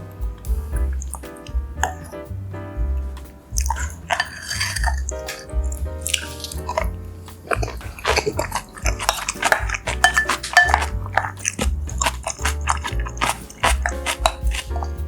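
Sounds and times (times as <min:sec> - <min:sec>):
background music with low bass: 0:00.0 - 0:15.0
chewing: 0:06.1 - 0:14.9
utensil clicking against a bowl: 0:07.4 - 0:15.0.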